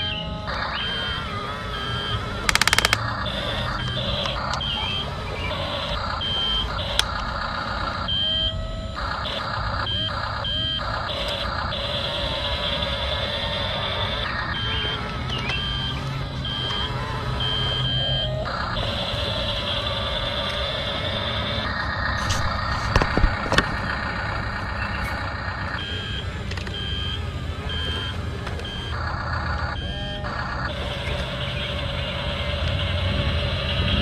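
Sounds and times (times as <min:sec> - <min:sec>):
electronic reversing beeps: 0:00.0 - 0:34.0
simulated engine sound: 0:00.0 - 0:34.0.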